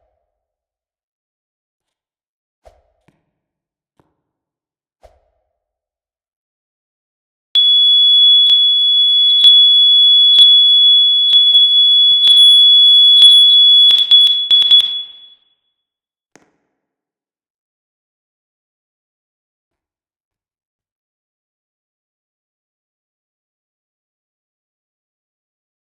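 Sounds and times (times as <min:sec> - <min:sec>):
fire alarm high-pitched tone: 0:07.6 - 0:15.4.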